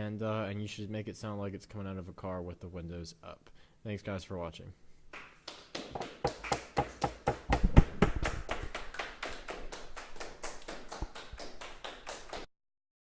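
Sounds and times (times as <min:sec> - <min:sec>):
rapid sharp tapping: 0:06.0 - 0:08.6.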